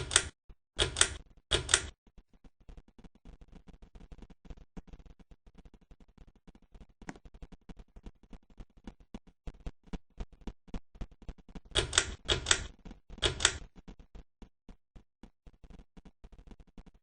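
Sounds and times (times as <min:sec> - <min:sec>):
ceiling fan clicking: 0:00.0 - 0:01.9, 0:11.8 - 0:13.7.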